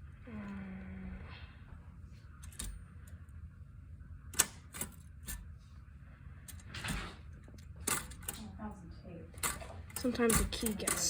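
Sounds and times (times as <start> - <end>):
typewriter mechanism rattle: 7.8 - 8.4, 9.4 - 11.0
typewriter keys clacking: 9.4 - 11.0.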